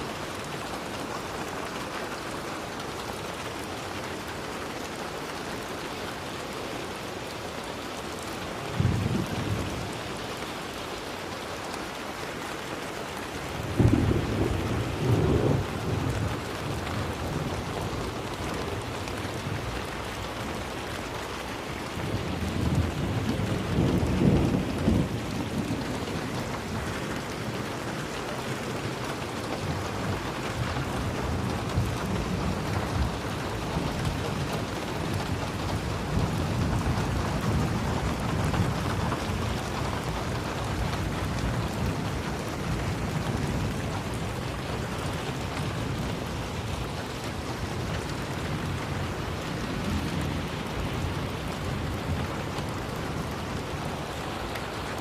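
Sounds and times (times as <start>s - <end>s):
steady rain falling: 0.0s - 55.0s
thunder rumbles: 8.7s - 10.1s, 13.6s - 20.8s, 21.8s - 54.8s.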